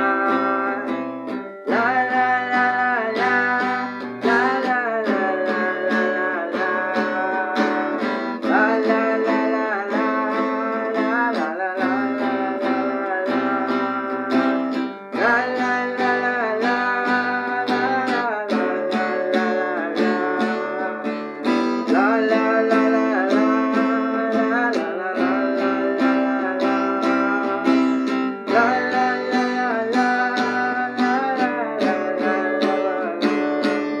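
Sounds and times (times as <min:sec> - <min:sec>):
strummed guitar: 0:00.0 - 0:34.0.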